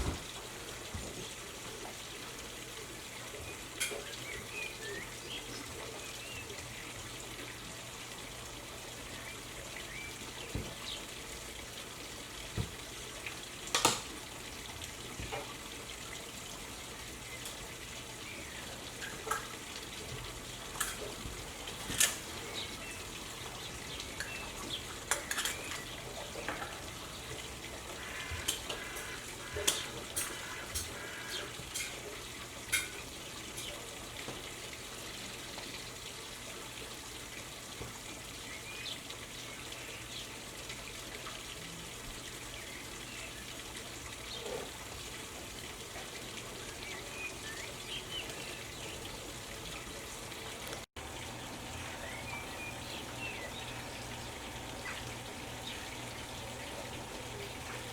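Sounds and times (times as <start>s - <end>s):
small birds chirping: 22.4s - 27.4s, 51.0s - 57.9s.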